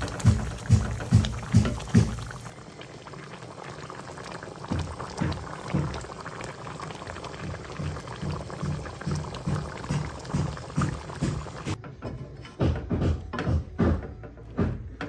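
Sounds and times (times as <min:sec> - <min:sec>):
sauce bubbling in a pan: 0:00.0 - 0:11.8.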